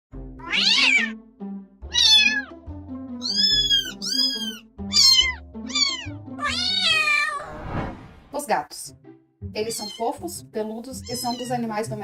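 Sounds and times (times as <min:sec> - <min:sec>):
background music: 0:00.1 - 0:12.0
cat meowing: 0:00.4 - 0:01.2, 0:01.9 - 0:02.6, 0:03.2 - 0:07.6, 0:09.7 - 0:10.1, 0:11.0 - 0:11.6.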